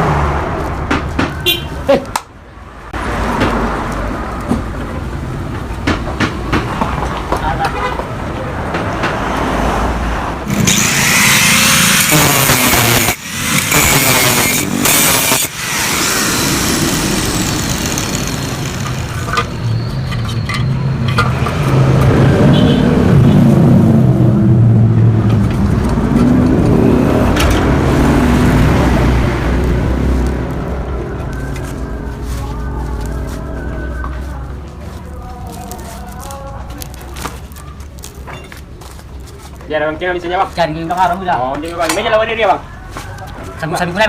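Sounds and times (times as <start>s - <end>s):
motorcycle engine revving: 10.4s - 19.8s, 21.3s - 32.1s.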